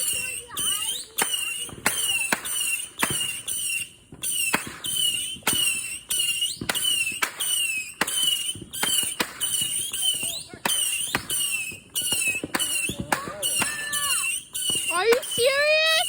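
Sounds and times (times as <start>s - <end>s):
fireworks bangs: 0.0s - 16.0s.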